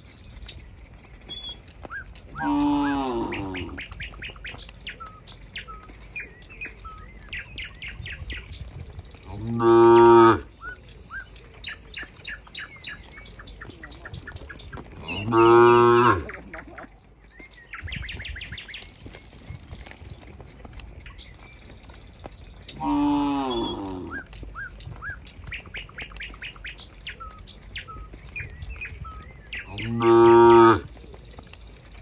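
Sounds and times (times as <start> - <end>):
small birds chirping: 0.0 - 32.0
cows mooing: 2.3 - 4.0, 9.2 - 10.5, 14.8 - 16.8, 22.7 - 24.3, 29.6 - 31.0.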